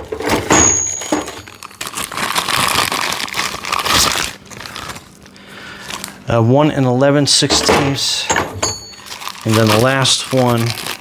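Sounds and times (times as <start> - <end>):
packaging crinkling and rustling: 0.0 - 6.2, 8.9 - 11.0.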